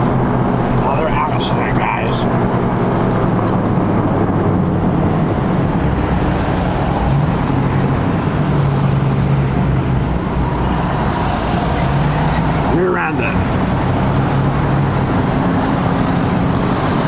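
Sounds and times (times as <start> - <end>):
vehicle road and engine noise: 0.0 - 17.0.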